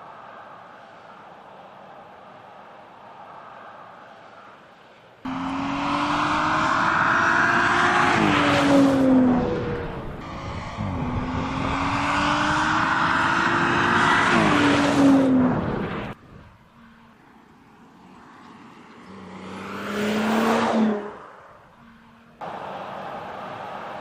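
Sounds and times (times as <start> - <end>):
car engine accelerating: 5.3 - 16.2, 19.0 - 21.3.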